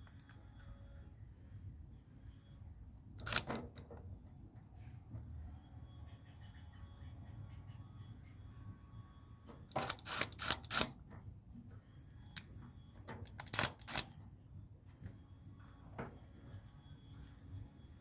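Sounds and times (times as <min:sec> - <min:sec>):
faint low hum: 0:00.0 - 0:18.0.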